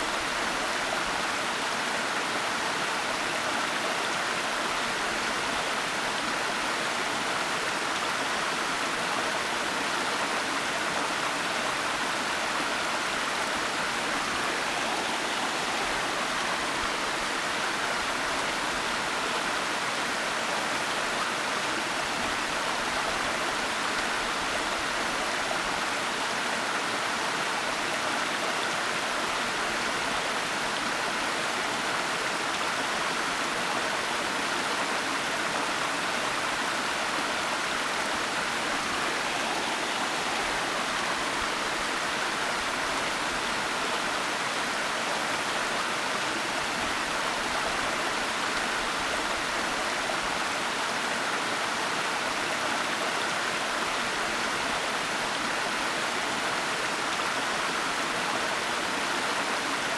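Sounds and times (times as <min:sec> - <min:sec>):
waterfall rushing: 0:12.7 - 0:19.2, 0:34.8 - 0:51.1.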